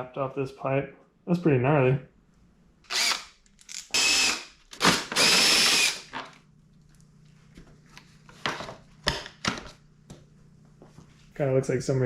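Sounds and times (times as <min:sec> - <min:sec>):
power drill bursts: 0:02.9 - 0:03.3, 0:03.9 - 0:06.1.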